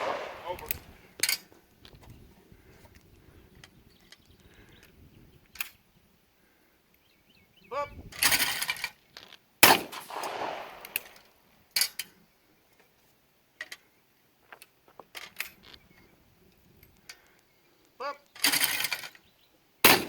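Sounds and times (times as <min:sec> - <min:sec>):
shotgun blast echoing: 0:00.0 - 0:01.0, 0:09.6 - 0:11.2
sharp crack: 0:00.0 - 0:01.1, 0:09.6 - 0:11.4.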